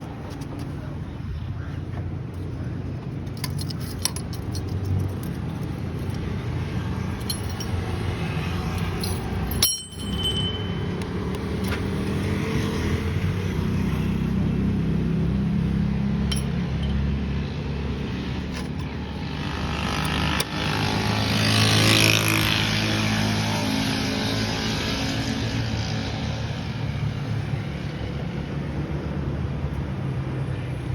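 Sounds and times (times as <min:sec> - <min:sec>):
clutch bearing noise: 0:03.2 - 0:12.1.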